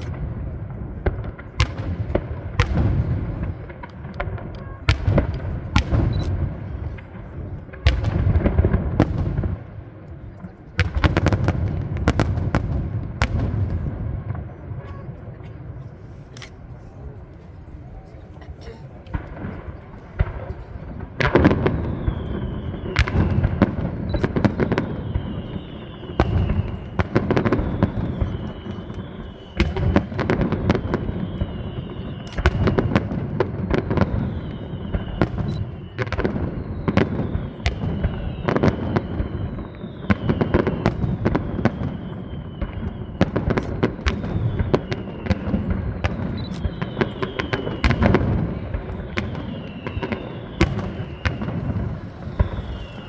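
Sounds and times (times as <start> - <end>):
fireworks bangs and crackles: 0.0 - 53.0
fireworks whistling falling in pitch: 19.1 - 53.0.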